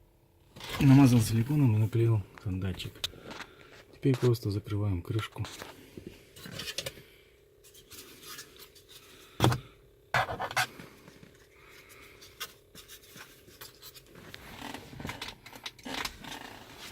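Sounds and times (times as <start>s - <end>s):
plastic cover rubbing and clicking: 12.3s - 16.9s.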